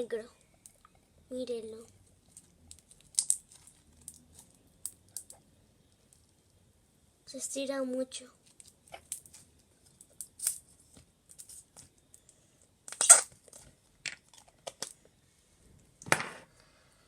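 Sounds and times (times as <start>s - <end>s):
slime clicks and crackles: 2.3s - 5.4s.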